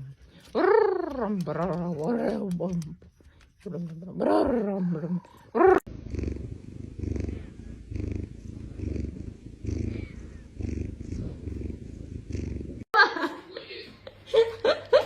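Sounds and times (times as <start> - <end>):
cat purring: 5.7 - 13.0.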